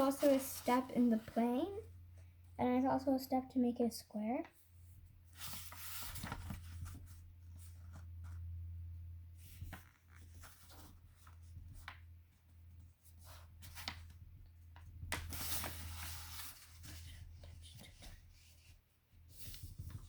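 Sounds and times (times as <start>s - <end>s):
paper rustling and folding: 0.0s - 1.8s, 5.3s - 8.4s, 9.4s - 12.0s, 13.0s - 20.0s.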